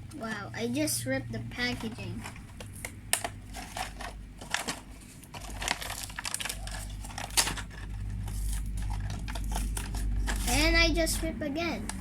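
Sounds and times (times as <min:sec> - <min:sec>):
packaging crinkling and tearing: 0:01.6 - 0:10.8.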